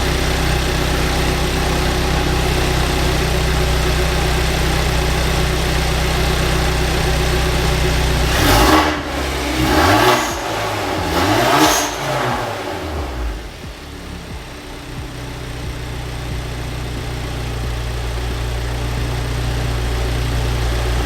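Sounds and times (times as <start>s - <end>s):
car engine idling and revving: 0.0s - 21.0s.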